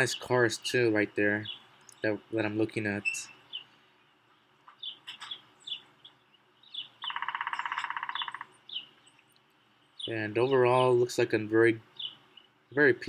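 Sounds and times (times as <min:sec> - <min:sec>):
songbirds chirping: 0:00.0 - 0:13.0
rapid pulsed bird trill: 0:04.8 - 0:09.2.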